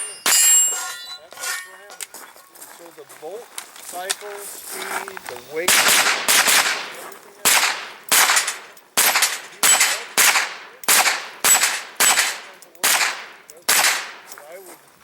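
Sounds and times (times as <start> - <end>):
gunshots with echo: 5.7 - 14.3.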